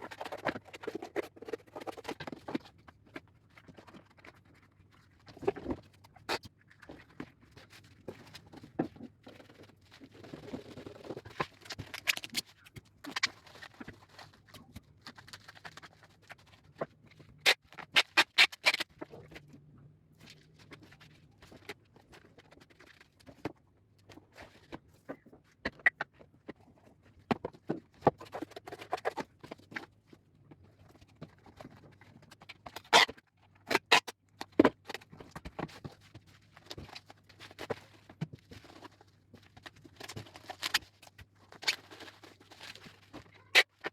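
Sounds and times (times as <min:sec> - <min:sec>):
packaging rustling and crinkling: 0:06.8 - 0:16.9, 0:34.8 - 0:43.9.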